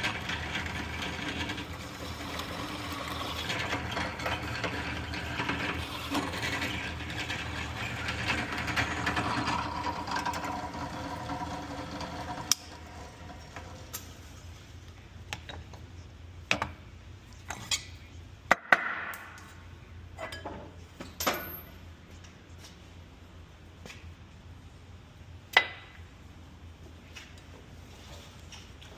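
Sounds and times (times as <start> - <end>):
machine whirring: 0.0 - 14.4.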